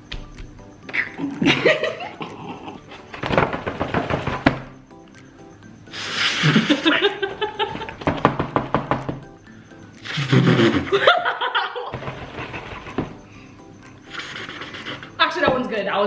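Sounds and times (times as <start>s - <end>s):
light background music: 0.0s - 16.0s
vocal hiss-like bursts: 5.9s - 6.7s, 10.0s - 10.9s, 14.0s - 15.2s.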